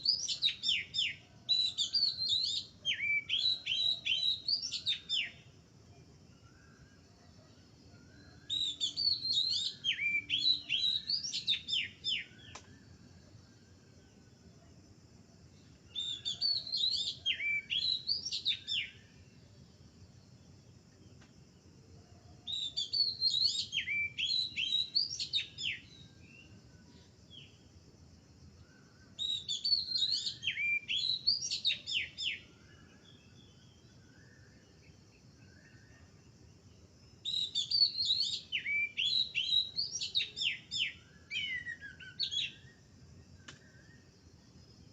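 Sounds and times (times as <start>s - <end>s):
small bird singing: 0.0s - 27.9s, 28.5s - 44.9s.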